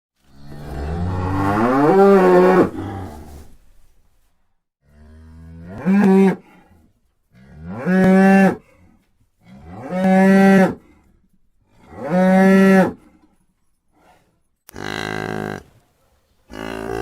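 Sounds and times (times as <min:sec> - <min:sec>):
cow mooing: 0:00.3 - 0:03.2, 0:14.7 - 0:15.7, 0:16.5 - 0:17.0.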